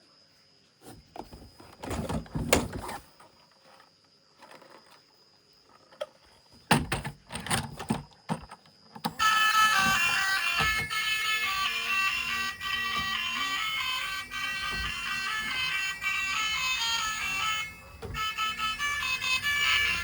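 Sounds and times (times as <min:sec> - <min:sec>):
faint high whine: 0:09.1 - 0:20.0
music: 0:09.2 - 0:20.0.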